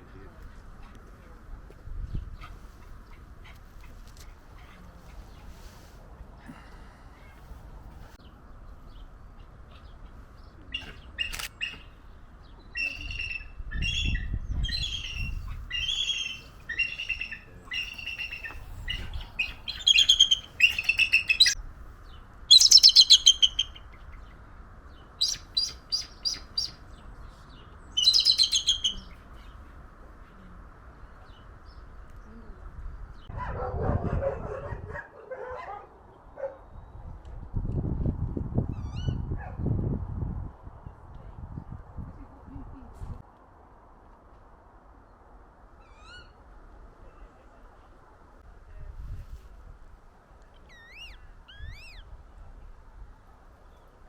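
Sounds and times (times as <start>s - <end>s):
bird calling with trills: 12.7s - 21.6s, 22.5s - 23.8s, 27.9s - 29.2s, 50.6s - 52.1s.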